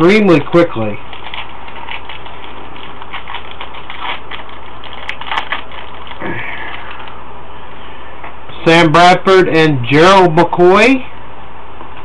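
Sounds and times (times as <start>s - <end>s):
microphone hiss: 0.0s - 12.0s
foil wrapper crinkling: 0.6s - 7.2s.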